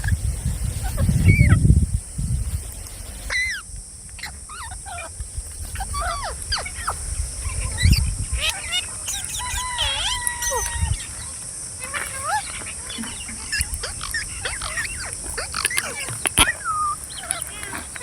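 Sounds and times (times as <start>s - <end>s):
parrot squawking and chirping: 7.6s - 11.1s, 11.8s - 18.0s.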